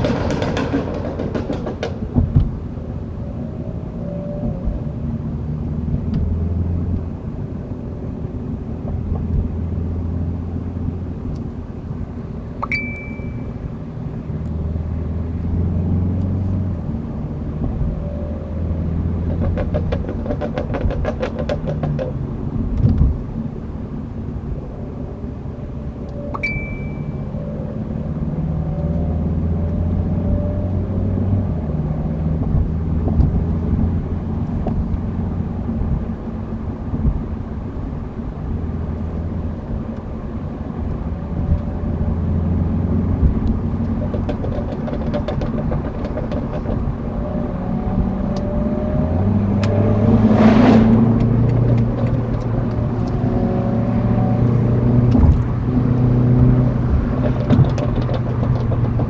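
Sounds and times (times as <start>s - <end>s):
exhaust crackles and pops: 0.0s - 2.7s, 18.6s - 23.5s, 32.4s - 36.1s, 43.0s - 48.6s, 50.8s - 59.0s.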